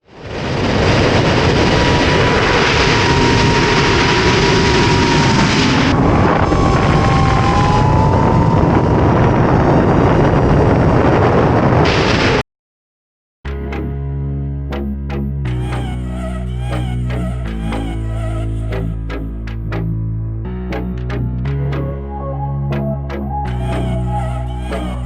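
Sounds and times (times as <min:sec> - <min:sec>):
wind on microphone: 0:00.1 - 0:12.4
drone propellers whining: 0:01.5 - 0:09.9, 0:22.7 - 0:25.0.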